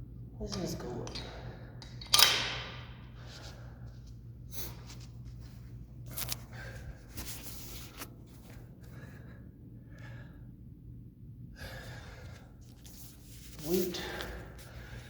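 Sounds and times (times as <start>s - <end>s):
steady low hum: 0.0s - 15.0s
man breathing heavily: 3.0s - 4.9s, 6.4s - 7.2s, 8.5s - 10.7s, 11.5s - 12.8s, 13.6s - 15.0s.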